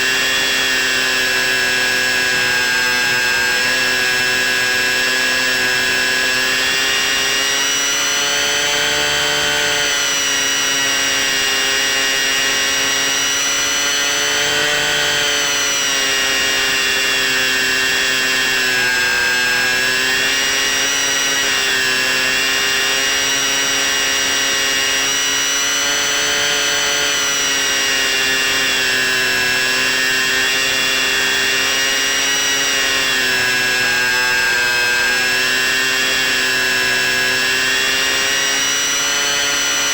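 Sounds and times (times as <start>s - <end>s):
model plane motor whining: 0.0s - 39.9s.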